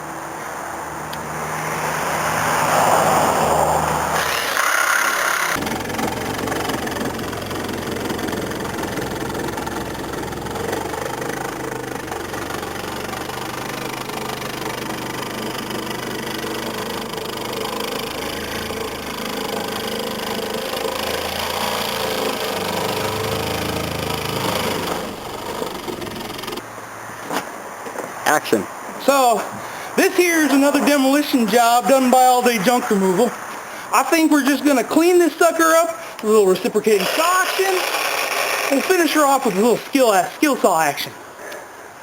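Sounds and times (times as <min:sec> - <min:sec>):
motor running steadily: 0:03.9 - 0:26.7.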